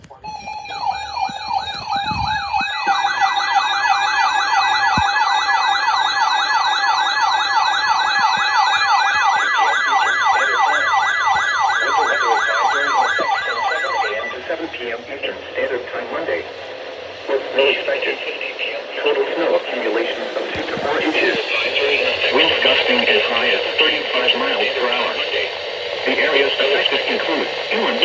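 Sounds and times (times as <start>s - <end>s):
siren-like sweeping tone: 0.2s - 15.0s
steady alert tones: 0.2s - 15.1s.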